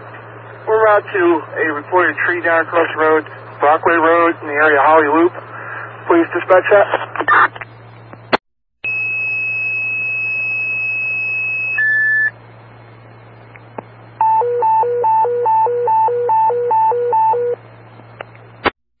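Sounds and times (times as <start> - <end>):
radio hum: 0.0 - 8.4
fire dispatch alert tones: 8.8 - 12.4, 14.2 - 17.6.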